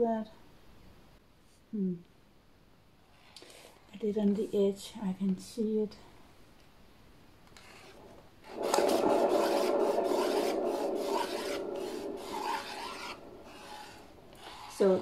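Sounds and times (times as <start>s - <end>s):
turntable bearing grinding: 7.6s - 15.0s.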